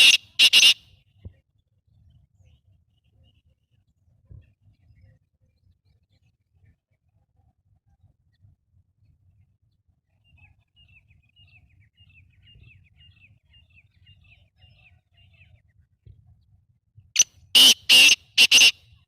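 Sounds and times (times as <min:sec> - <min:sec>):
bird harsh grating calls: 0:00.0 - 0:00.8, 0:17.6 - 0:18.8.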